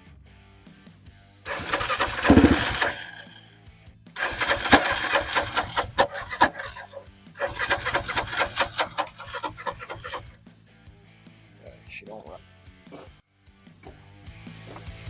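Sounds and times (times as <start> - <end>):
engine cranking: 1.5 - 3.4, 4.2 - 10.3.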